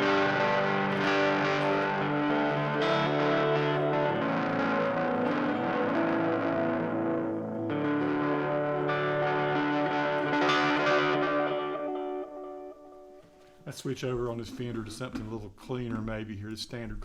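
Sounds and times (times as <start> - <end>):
electric guitar chords with delay: 0.0 - 13.4.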